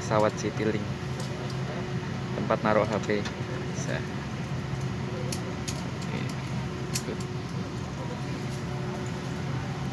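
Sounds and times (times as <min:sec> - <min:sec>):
airliner cabin drone: 0:00.0 - 0:09.9.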